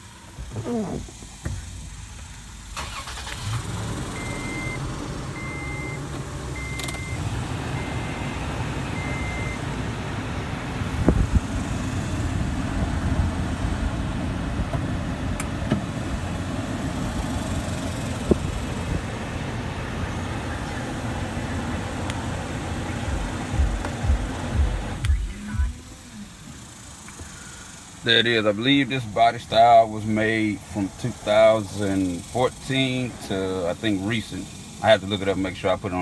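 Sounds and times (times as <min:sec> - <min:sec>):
car engine starting and idling: 0:00.0 - 0:36.0
short beeps: 0:05.4 - 0:06.0, 0:06.6 - 0:07.2, 0:09.0 - 0:09.6.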